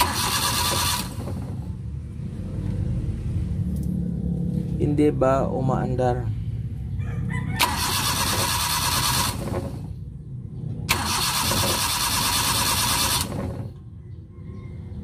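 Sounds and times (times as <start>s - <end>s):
engine cranking by starter motor: 0.0s - 1.8s, 7.6s - 10.0s, 10.9s - 13.9s.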